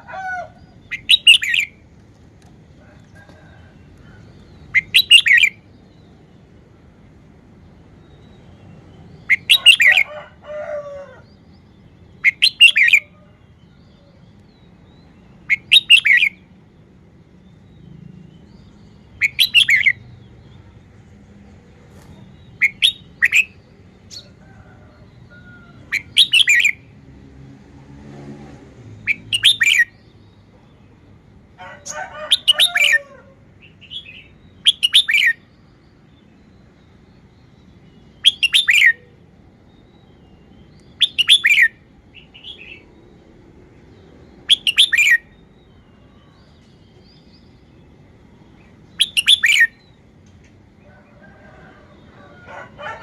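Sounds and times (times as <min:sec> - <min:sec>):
bulbul whistled song: 0:00.9 - 0:01.8, 0:04.7 - 0:05.6, 0:12.2 - 0:13.1, 0:15.5 - 0:16.4, 0:19.2 - 0:20.1, 0:26.0 - 0:26.8, 0:29.1 - 0:30.0, 0:33.9 - 0:35.4, 0:38.1 - 0:39.0, 0:39.8 - 0:43.0, 0:44.4 - 0:45.5, 0:49.0 - 0:49.9.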